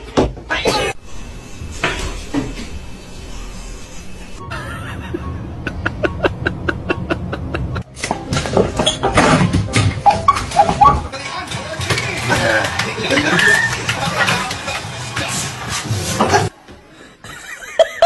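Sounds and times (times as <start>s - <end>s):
low hum: 1.0s - 8.5s
person laughing in bursts: 4.5s - 8.0s.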